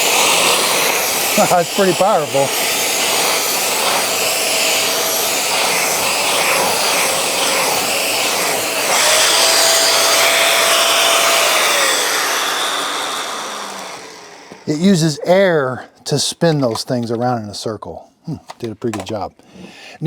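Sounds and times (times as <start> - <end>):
vacuum cleaner suction with whine: 0.0 - 15.4.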